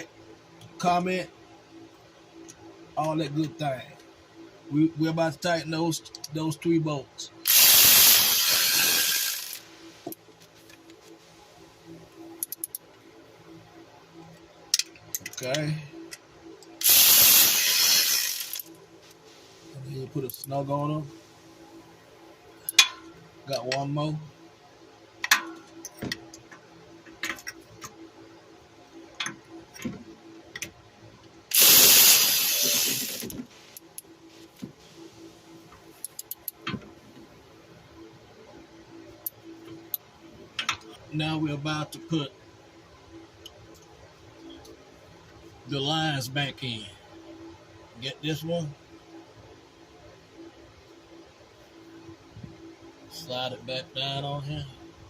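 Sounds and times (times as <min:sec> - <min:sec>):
faint steady hum: 0:00.0 - 0:55.0
loud rushing hiss: 0:07.5 - 0:09.7, 0:16.8 - 0:18.6, 0:31.5 - 0:33.7
metallic clicks of hand tools: 0:12.4 - 0:12.8, 0:36.0 - 0:36.6.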